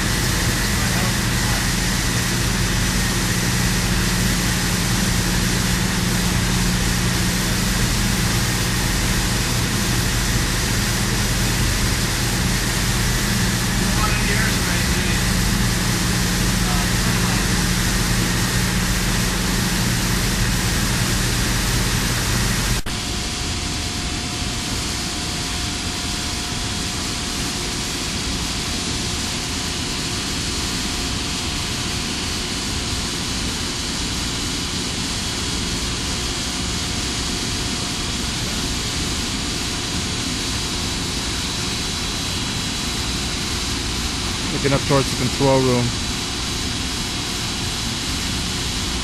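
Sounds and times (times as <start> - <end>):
steady hiss: 0.0 - 22.8
faint constant whines: 0.0 - 49.0
industrial rushing noise with hum: 0.0 - 49.0.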